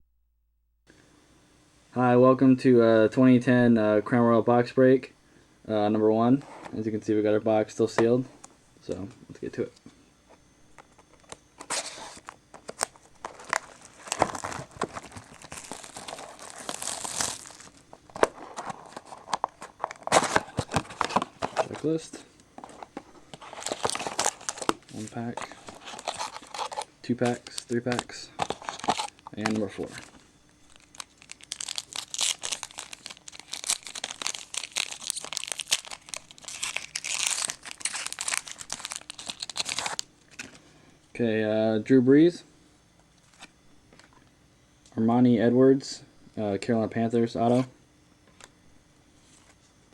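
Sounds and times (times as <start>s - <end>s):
plastic wrap crackling: 11.6s - 21.8s, 22.6s - 40.5s.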